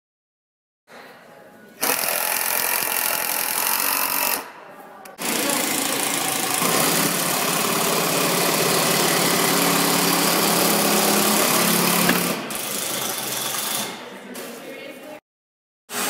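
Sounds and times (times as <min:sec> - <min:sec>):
electric power tool hissing: 0:05.2 - 0:12.6.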